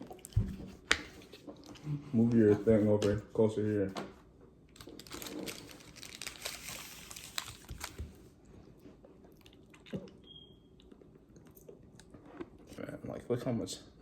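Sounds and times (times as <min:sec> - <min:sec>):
chewing and crunching fried food: 0:04.8 - 0:08.0, 0:08.8 - 0:10.2, 0:10.8 - 0:13.0.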